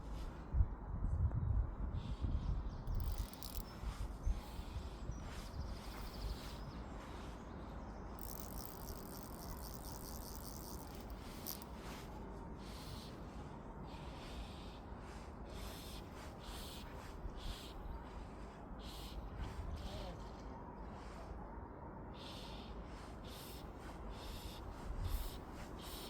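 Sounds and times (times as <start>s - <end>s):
low rumble of wind or handling: 0.0s - 26.0s
fly reel ratchet clicking: 2.9s - 4.6s, 8.2s - 12.0s, 25.1s - 26.0s.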